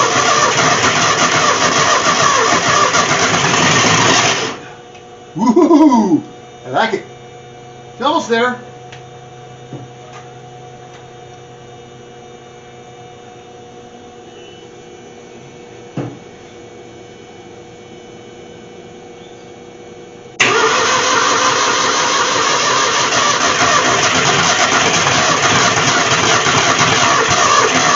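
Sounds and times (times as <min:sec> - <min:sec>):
engine cranked by starter: 0:00.0 - 0:04.6, 0:20.4 - 0:27.9.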